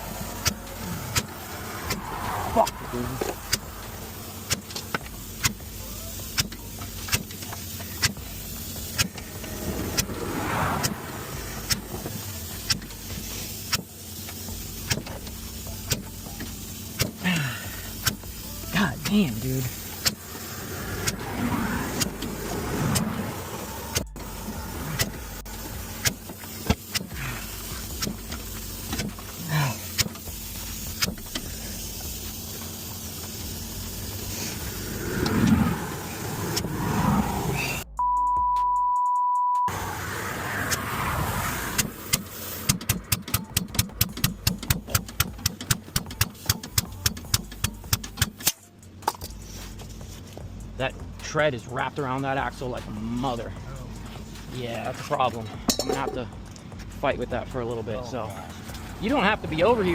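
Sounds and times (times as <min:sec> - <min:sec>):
highway traffic noise: 0:00.0 - 0:38.0, 0:39.7 - 0:59.9
vehicle engine idling: 0:00.0 - 0:38.0, 0:39.7 - 0:59.9
censor bleep tone: 0:37.9 - 0:39.7
sharp clicks: 0:41.8 - 0:49.3
sharp ticks: 0:41.8 - 0:49.4.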